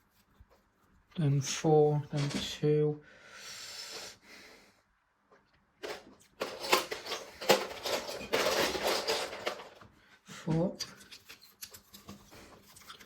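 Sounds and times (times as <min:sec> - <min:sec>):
plastic pieces clicking and clattering: 0:05.8 - 0:09.8
plastic pieces rustling: 0:05.8 - 0:09.8.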